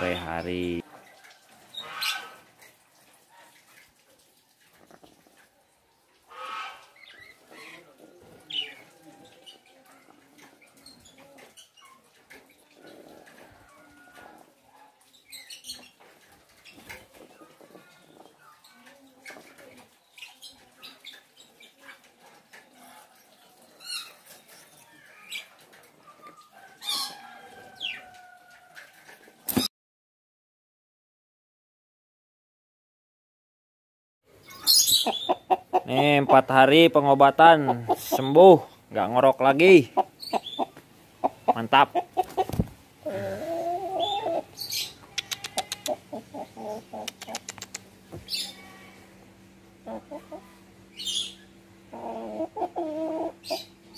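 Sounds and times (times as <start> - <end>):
faint chicken calls: 0.0 - 2.5, 6.2 - 29.5, 34.3 - 53.9
chicken clucking: 34.4 - 53.9
bird chirps: 40.2 - 40.8
chicken wavering call: 43.0 - 49.1.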